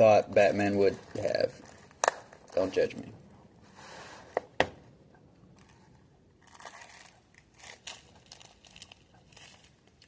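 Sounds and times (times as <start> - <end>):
packets crinkling and rustling: 0.0 - 3.0, 5.6 - 10.0.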